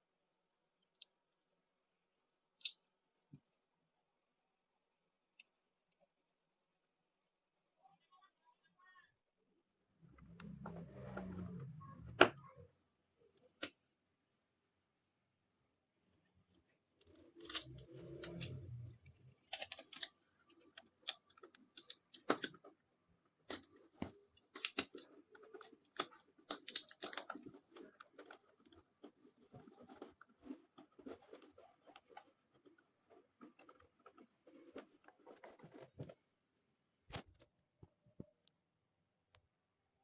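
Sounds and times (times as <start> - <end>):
scraping and rustling: 16.5 - 36.3
sharp clicks and snips: 23.4 - 32.3.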